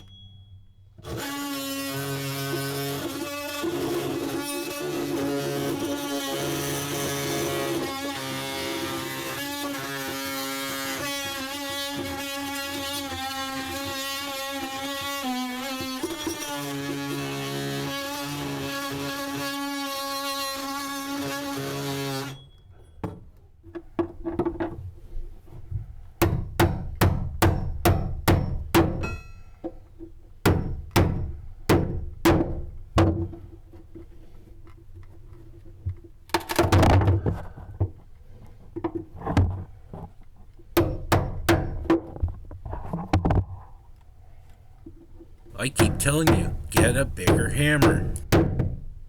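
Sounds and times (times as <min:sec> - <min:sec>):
hammer blows on wood: 0:45.6 - 0:48.2.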